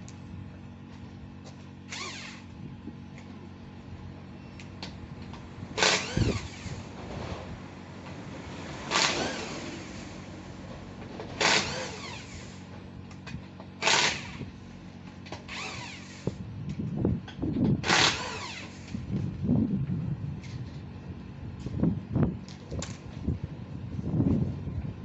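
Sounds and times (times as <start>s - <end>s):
steady low hum: 0.0s - 25.0s
impact wrench bursts: 1.9s - 2.5s, 5.8s - 6.9s, 8.9s - 10.2s, 11.4s - 12.7s, 13.8s - 14.5s, 15.4s - 16.4s, 17.8s - 19.0s.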